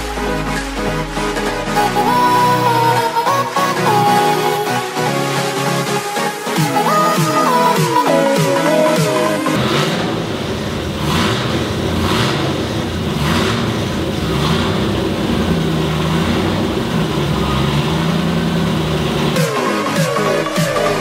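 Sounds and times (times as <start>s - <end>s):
petrol engine running: 9.6s - 19.8s.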